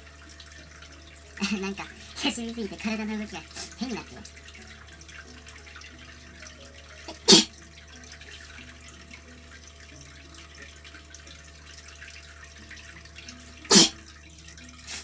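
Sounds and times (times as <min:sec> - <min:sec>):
person sneezing: 0:07.2 - 0:07.5, 0:13.7 - 0:14.0.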